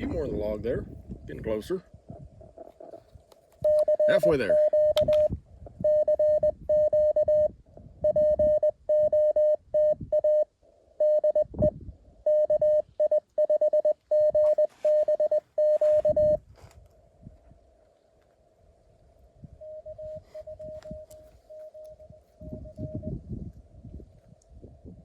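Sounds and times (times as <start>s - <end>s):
morse code tone: 3.6s - 16.4s, 19.6s - 23.2s.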